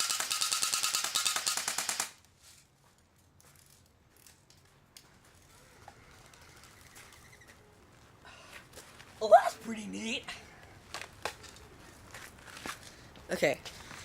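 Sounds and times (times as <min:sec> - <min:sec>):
airsoft rifle full auto burst: 0:00.0 - 0:02.2.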